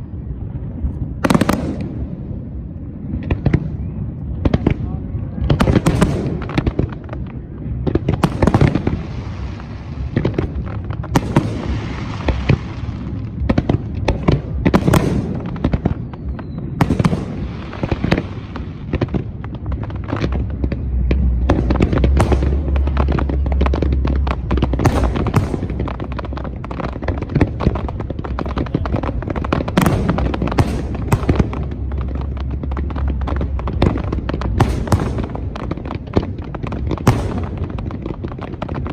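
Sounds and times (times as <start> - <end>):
fireworks bangs and booms: 0.0 - 38.9
low rumble: 0.0 - 38.9.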